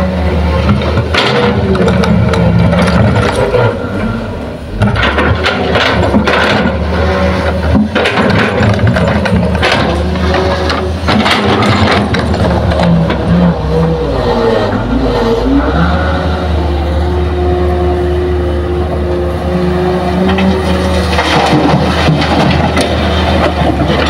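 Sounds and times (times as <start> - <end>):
heavy diesel engine running: 0.0 - 24.0
metal clanks and knocks: 0.6 - 3.8, 4.8 - 13.6, 20.2 - 24.0.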